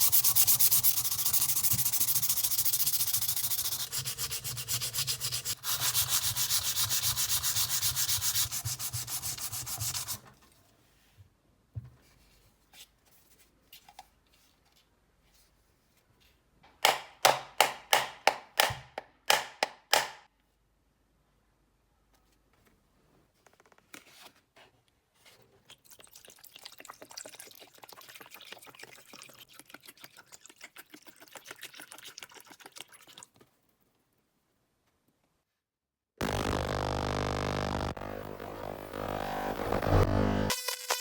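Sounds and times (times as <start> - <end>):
hand sanding strokes: 0.0 - 10.2.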